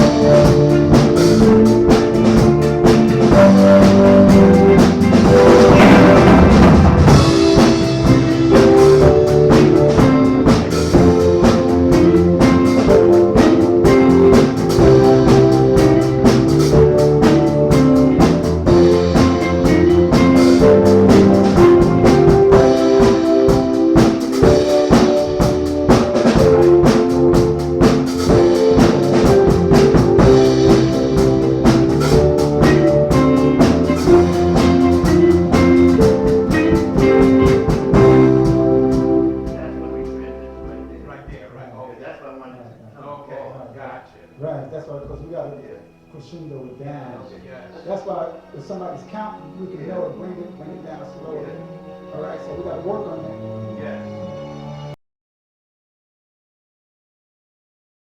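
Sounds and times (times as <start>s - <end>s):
live band playing a groove: 0.0s - 41.2s
drum kit steady beat: 0.0s - 41.3s.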